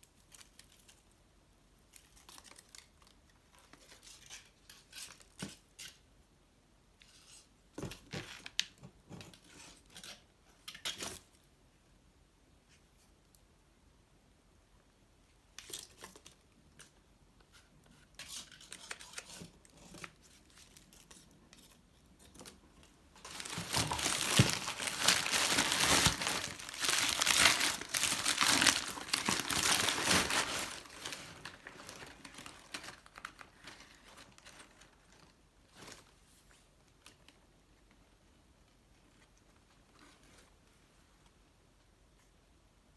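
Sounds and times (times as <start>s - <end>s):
packing material crinkling: 23.1s - 36.1s.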